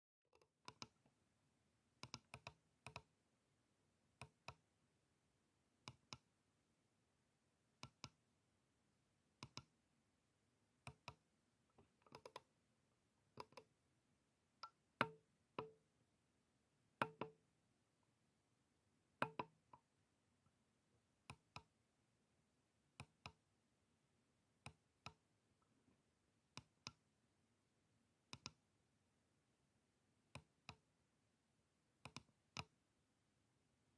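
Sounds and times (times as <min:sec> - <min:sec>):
computer mouse clicking: 0:00.4 - 0:01.0, 0:02.0 - 0:03.1, 0:09.4 - 0:09.7, 0:12.1 - 0:12.5, 0:13.4 - 0:13.7, 0:28.3 - 0:28.6, 0:32.1 - 0:32.7.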